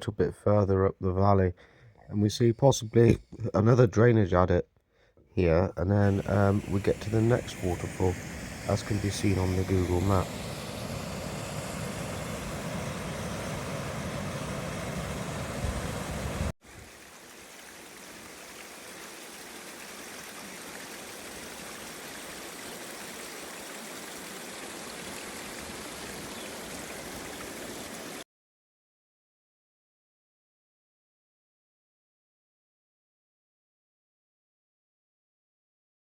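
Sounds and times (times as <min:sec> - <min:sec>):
waterfall rushing: 0:06.1 - 0:28.2.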